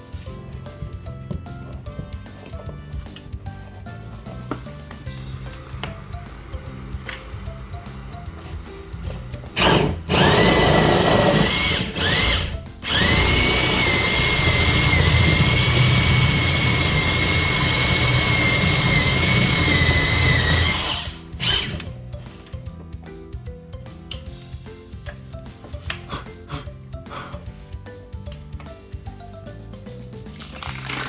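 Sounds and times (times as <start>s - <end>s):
background music: 0.0s - 31.0s
power drill whining: 6.5s - 22.0s.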